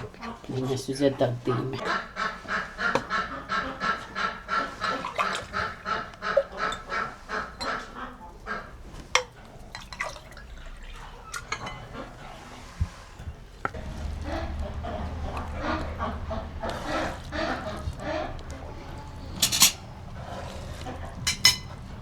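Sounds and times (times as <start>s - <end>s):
fowl honking: 1.5s - 8.8s, 13.7s - 21.8s.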